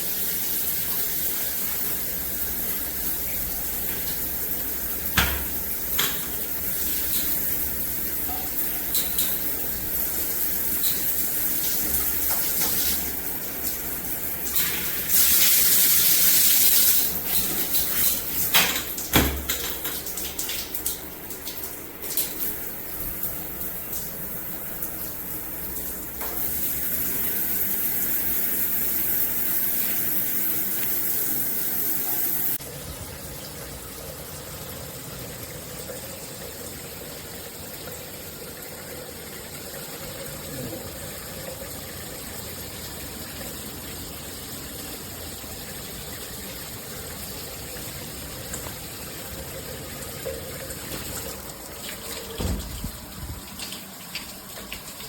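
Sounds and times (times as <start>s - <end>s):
shower water spraying: 0.0s - 32.7s, 42.0s - 55.0s
thump: 52.4s - 52.8s.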